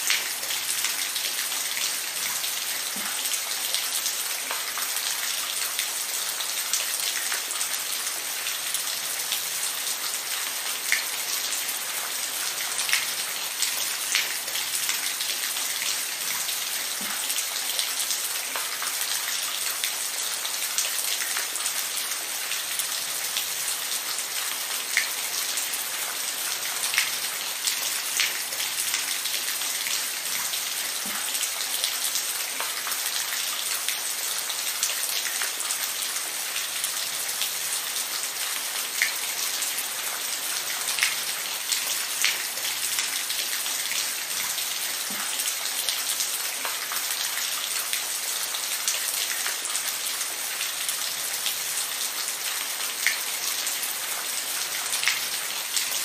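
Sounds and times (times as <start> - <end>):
rain on a hard surface: 0.0 - 56.0.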